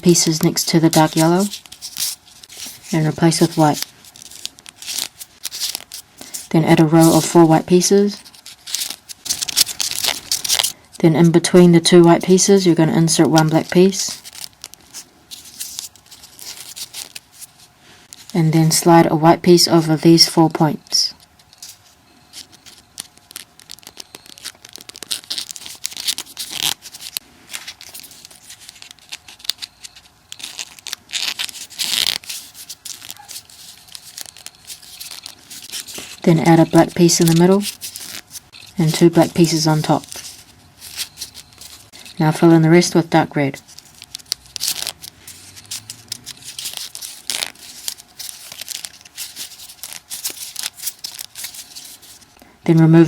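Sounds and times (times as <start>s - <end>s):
paper rustling and crinkling: 0.0s - 18.4s, 21.2s - 42.2s, 43.6s - 53.0s.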